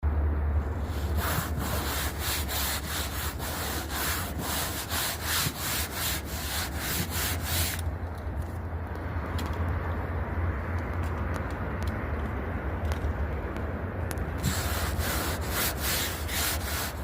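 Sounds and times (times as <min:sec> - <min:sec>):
steady low rumble: 0:00.0 - 0:17.0
rhythmic scraping strokes: 0:00.8 - 0:07.8, 0:14.4 - 0:17.0.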